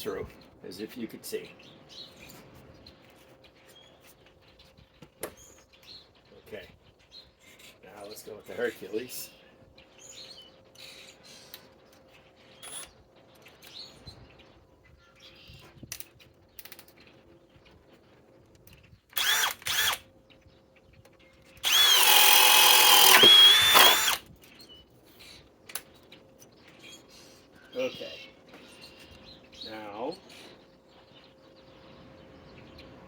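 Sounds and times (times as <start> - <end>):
cordless drill whining: 19.2 - 20.0, 21.6 - 24.3.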